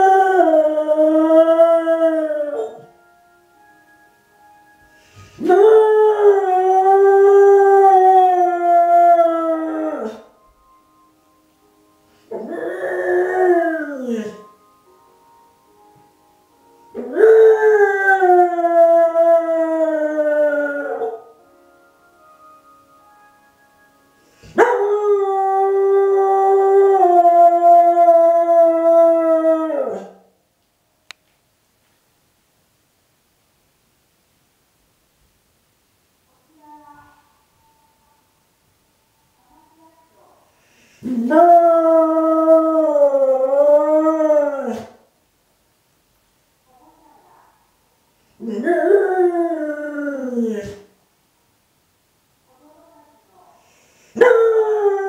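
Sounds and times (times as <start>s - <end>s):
faint chime tones: 1.9s - 6.8s, 8.4s - 18.1s, 20.2s - 25.8s, 36.6s - 40.4s.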